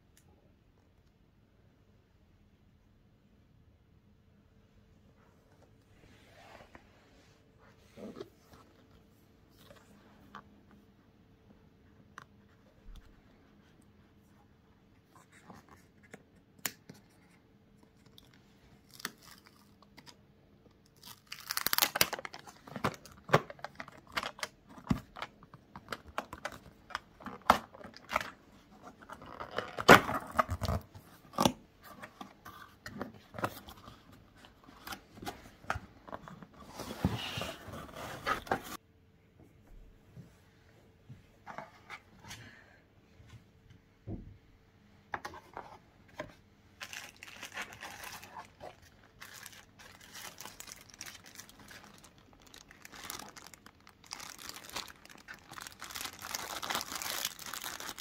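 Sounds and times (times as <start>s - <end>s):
packaging tearing and crinkling: 21.0s - 25.2s, 46.8s - 58.0s.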